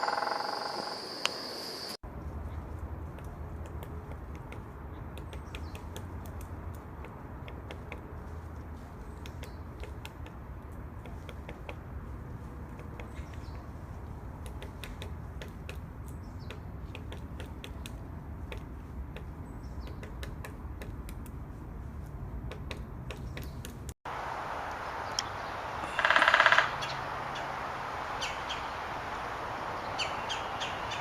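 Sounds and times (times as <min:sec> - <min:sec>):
woodpecker tapping on wood: 0:03.0 - 0:23.9, 0:25.8 - 0:26.9.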